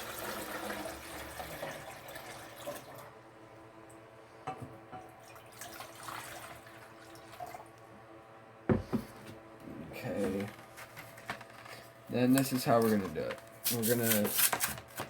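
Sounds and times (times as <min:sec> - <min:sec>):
water pouring into a container: 0:00.0 - 0:03.1, 0:05.2 - 0:07.7.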